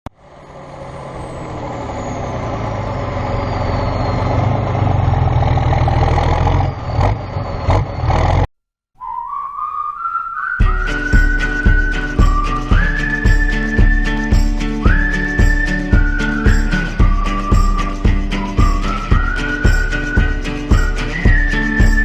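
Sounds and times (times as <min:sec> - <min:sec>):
whistle rising in pitch: 0:03.0 - 0:04.7, 0:09.0 - 0:22.0
music: 0:10.6 - 0:22.0.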